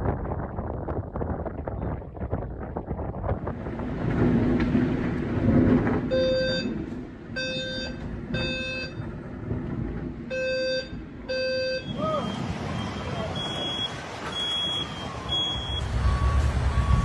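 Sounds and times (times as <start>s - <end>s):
storm wind rushing: 0.0s - 10.3s
heavy rumble: 0.0s - 17.0s
electronic alarm beeping: 6.1s - 6.7s, 7.4s - 9.0s, 10.3s - 12.0s, 12.8s - 17.0s.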